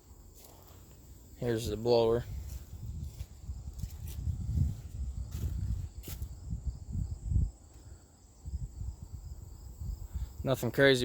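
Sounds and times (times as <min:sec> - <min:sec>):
wind buffeting microphone: 0:01.6 - 0:07.7, 0:08.3 - 0:10.4.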